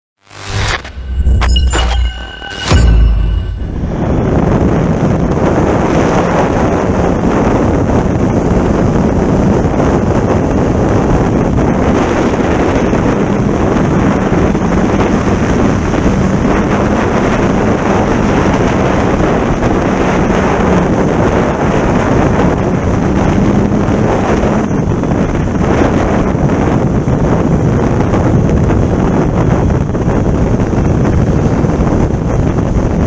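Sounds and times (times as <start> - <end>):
wind blowing across microphone: 4.0 - 33.0.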